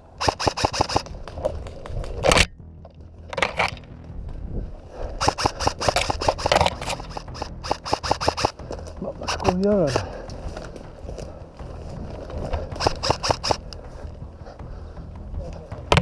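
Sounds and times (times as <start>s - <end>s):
airsoft rifle bursts: 0.2s - 1.2s, 5.2s - 8.6s, 9.2s - 10.2s, 12.8s - 13.6s.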